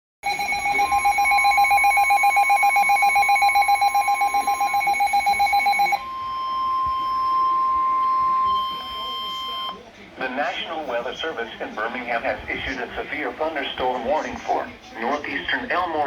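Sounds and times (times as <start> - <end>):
harsh pulsing alarm tone: 0.2 - 9.8
steady single tone: 5.9 - 9.8.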